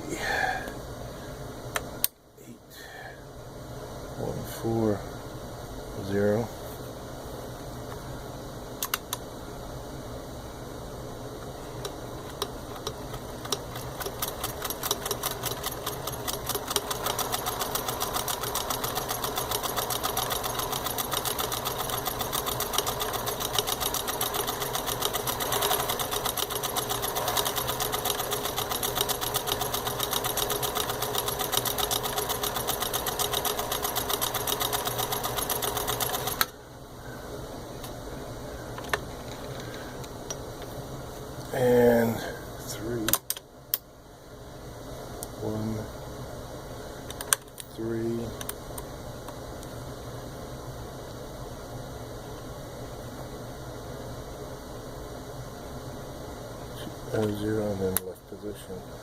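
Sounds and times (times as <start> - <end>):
sewing machine stitching: 12.8 - 36.5.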